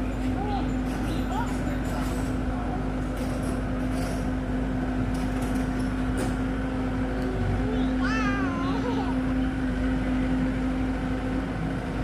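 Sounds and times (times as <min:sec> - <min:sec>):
diesel engine rumbling: 0:00.0 - 0:12.0.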